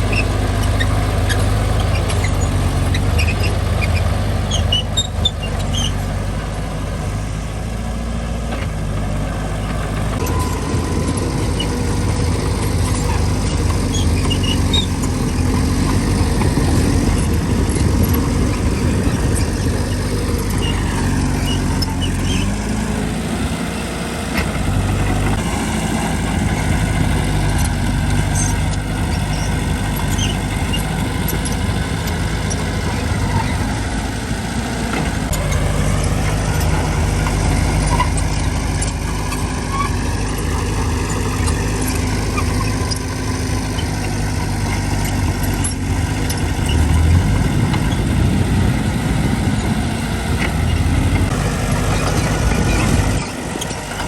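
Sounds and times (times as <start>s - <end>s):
short high squeaks: 0.0s - 6.2s, 10.2s - 16.5s, 17.1s - 22.8s, 27.5s - 33.7s, 35.3s - 48.1s
heavy machinery diesel engine running: 0.0s - 54.0s.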